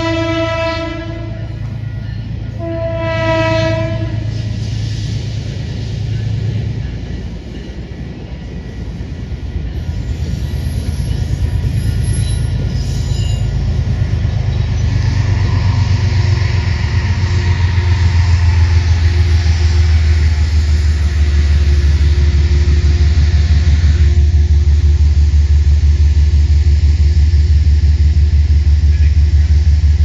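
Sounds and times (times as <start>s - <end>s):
train rumbling on rails: 0.0s - 30.0s
high wheel squeal: 9.8s - 19.0s.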